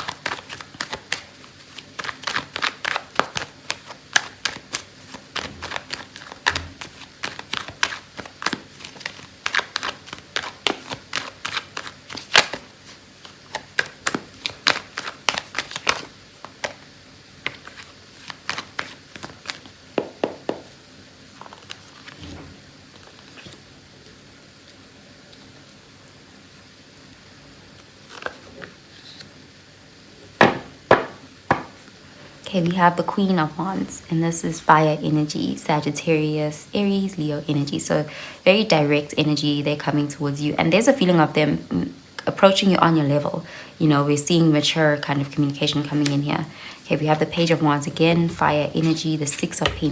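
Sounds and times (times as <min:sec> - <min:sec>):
cards being shuffled: 0:00.0 - 0:26.2, 0:27.0 - 0:29.3, 0:45.3 - 0:49.9.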